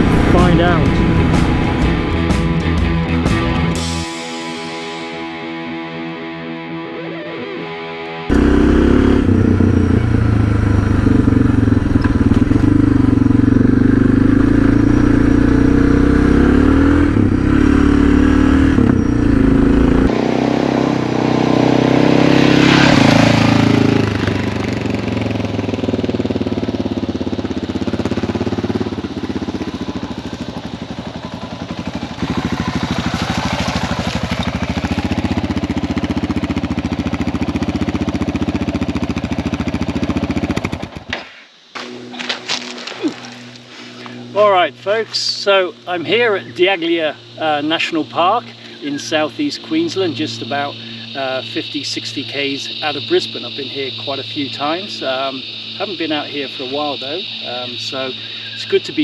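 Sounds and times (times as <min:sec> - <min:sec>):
motorcycle engine running: 0:00.0 - 0:04.1, 0:08.3 - 0:41.1, 0:41.8 - 0:51.2.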